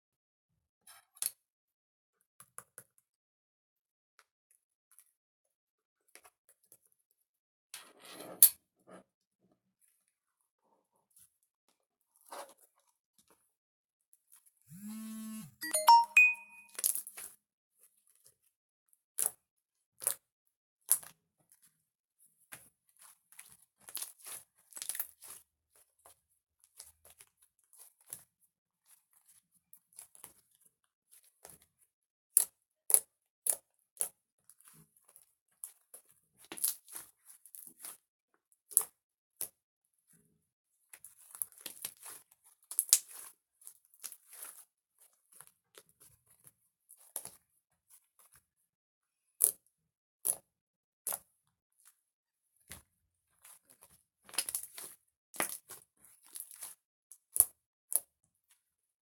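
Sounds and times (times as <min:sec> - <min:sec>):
brief chime-like note: 0:15.4 - 0:16.7.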